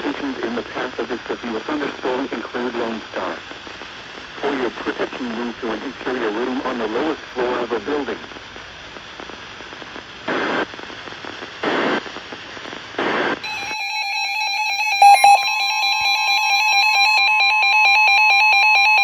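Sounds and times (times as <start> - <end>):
steady high electronic tone: 14.9 - 17.3
short data bursts: 15.0 - 16.4
rapidly pulsing beep: 15.0 - 17.7.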